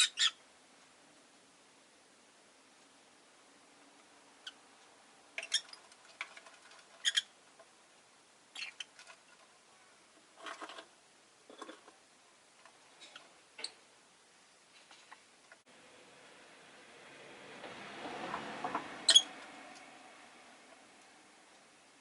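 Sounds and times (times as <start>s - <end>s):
lovebird chirping and clicking: 5.4s - 5.8s, 8.6s - 9.0s.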